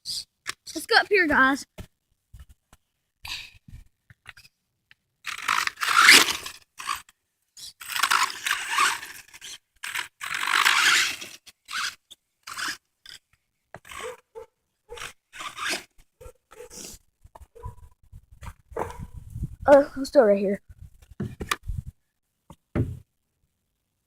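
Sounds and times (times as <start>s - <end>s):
toy car tyres scraping dirt: 5.2s - 17.7s.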